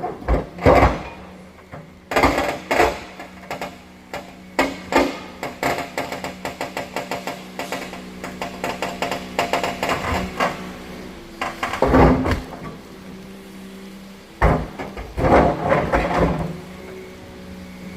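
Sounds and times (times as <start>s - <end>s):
rock and metal knocks: 0.0s - 10.7s, 11.4s - 12.8s, 14.4s - 16.6s
engine hum: 0.0s - 17.9s.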